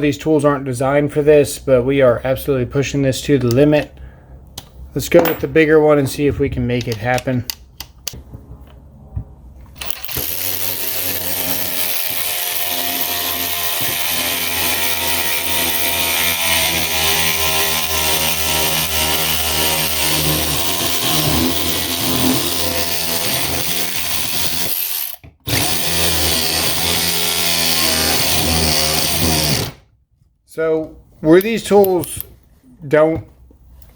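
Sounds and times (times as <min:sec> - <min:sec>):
electric ratchet motor running: 0:09.8 - 0:29.8.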